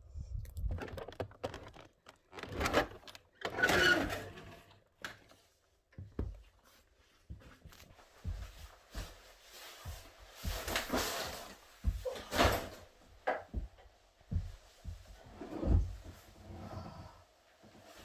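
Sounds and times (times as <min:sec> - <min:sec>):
knocks and clicks of handling: 0:00.6 - 0:03.5.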